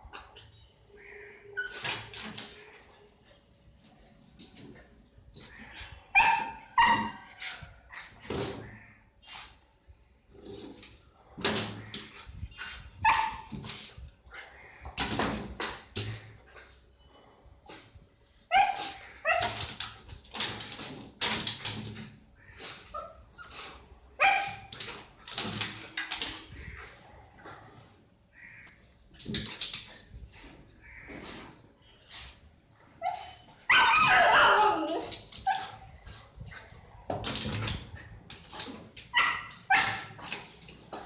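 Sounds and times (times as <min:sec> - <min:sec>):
dog barking and yipping: 0:06.1 - 0:08.2, 0:12.6 - 0:13.6, 0:18.5 - 0:19.8, 0:22.5 - 0:25.0, 0:32.9 - 0:37.3, 0:38.4 - 0:40.6.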